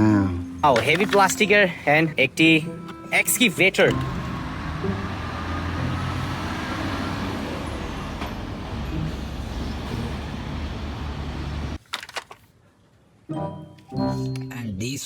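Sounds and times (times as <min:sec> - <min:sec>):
heavy vehicle engine humming: 0:02.7 - 0:11.8.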